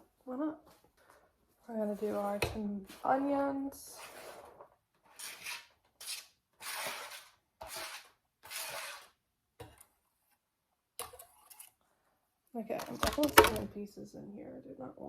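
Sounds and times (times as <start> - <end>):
onion scraped into a pot: 3.8 - 9.8.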